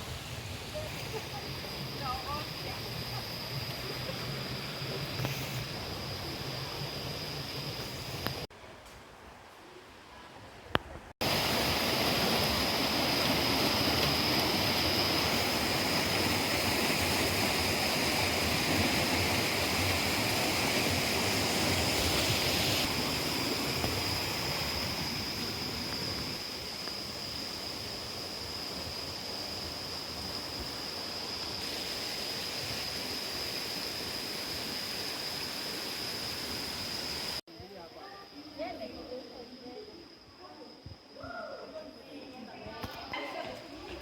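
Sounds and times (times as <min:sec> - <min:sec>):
waterfall rushing: 0:11.2 - 0:24.8.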